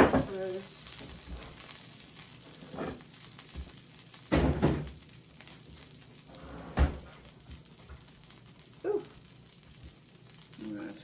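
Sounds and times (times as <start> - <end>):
oil sizzling in pan: 0.0 - 11.0
louder clunk: 4.3 - 4.9.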